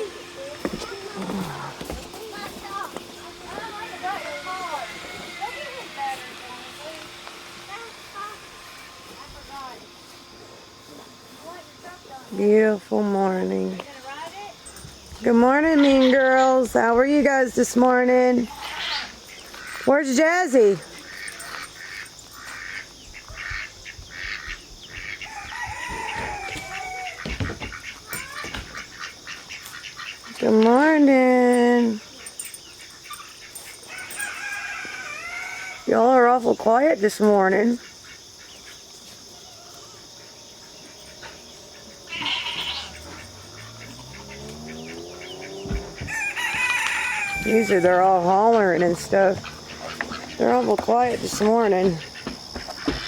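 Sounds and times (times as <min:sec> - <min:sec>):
goats bleating: 0:18.5 - 0:19.2, 0:42.0 - 0:44.9
rooster crowing: 0:25.2 - 0:27.4, 0:33.8 - 0:35.9, 0:42.0 - 0:48.3
dull thumps: 0:45.6 - 0:46.7.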